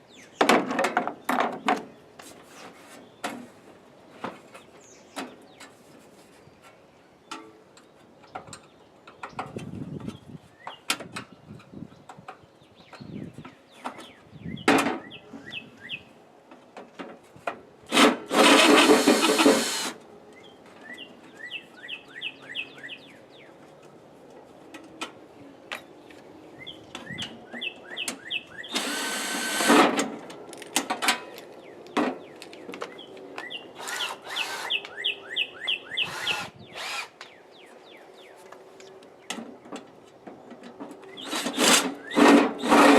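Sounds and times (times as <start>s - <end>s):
power drill-driver running: 18.3s - 20.0s, 28.8s - 29.8s, 33.8s - 34.8s, 36.1s - 37.1s.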